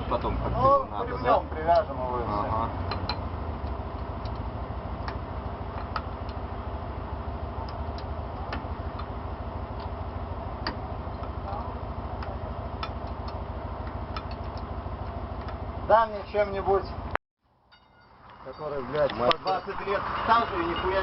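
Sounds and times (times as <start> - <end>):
truck engine idling: 0.0 - 21.0
sharp clicks and taps: 2.8 - 6.4, 12.2 - 15.6.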